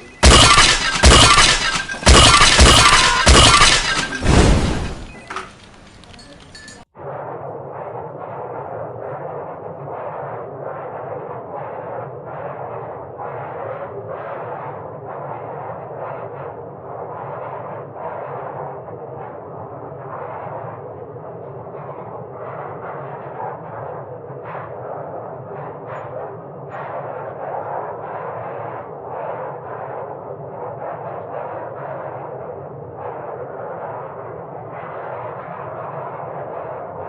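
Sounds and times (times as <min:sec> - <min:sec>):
muffled rushing noise: 0:00.0 - 0:06.1, 0:07.0 - 0:37.0
glass smashing: 0:00.2 - 0:06.8.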